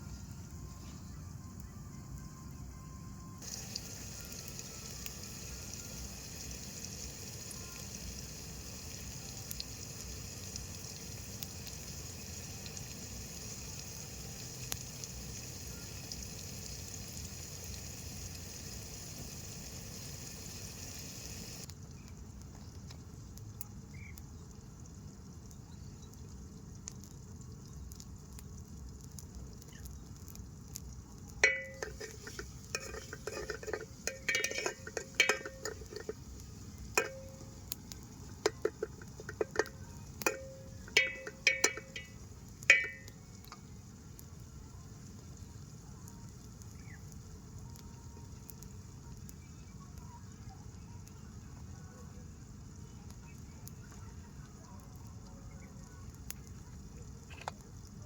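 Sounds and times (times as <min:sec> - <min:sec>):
vegetables sizzling in oil: 0:03.4 - 0:21.7, 0:23.4 - 0:58.0
metal cookware clattering: 0:31.4 - 0:36.2, 0:37.0 - 0:37.4, 0:38.5 - 0:43.1.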